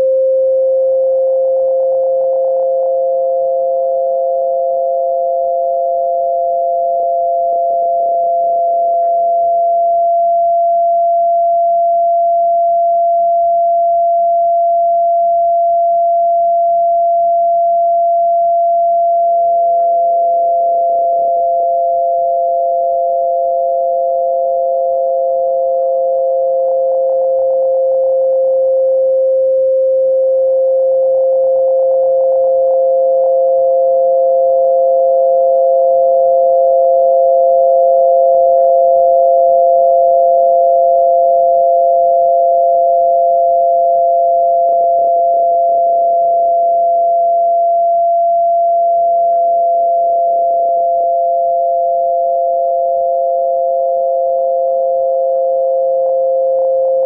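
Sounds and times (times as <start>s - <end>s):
steady electronic sine tones: 0.0s - 57.0s.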